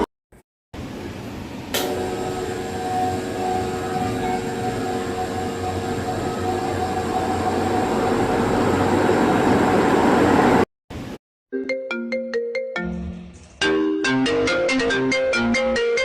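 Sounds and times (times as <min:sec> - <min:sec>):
noisy mechanical hum: 0:00.8 - 0:11.2
electronic ringtone melody: 0:11.5 - 0:13.2.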